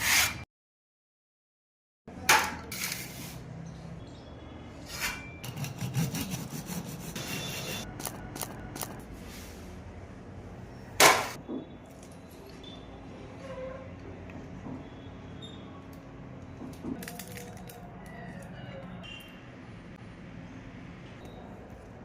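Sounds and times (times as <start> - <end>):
serrated knife sawing biscotti: 5.4 - 7.9.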